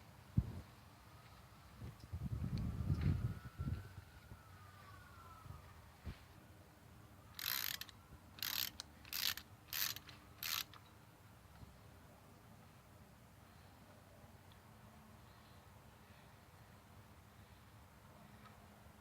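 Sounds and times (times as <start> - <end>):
ratchet wrench clicking: 7.4 - 10.8.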